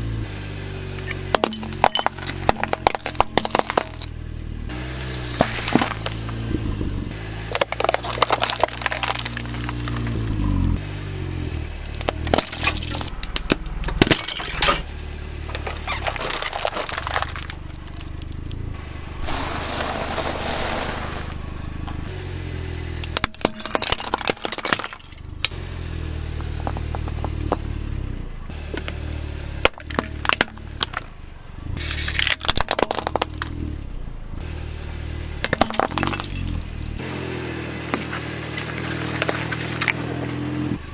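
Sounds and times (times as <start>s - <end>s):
car engine running: 0.0s - 40.9s
toys cracking and breaking: 7.5s - 10.2s, 11.9s - 14.8s, 15.5s - 18.5s, 23.0s - 25.6s, 31.9s - 33.6s, 35.4s - 36.8s.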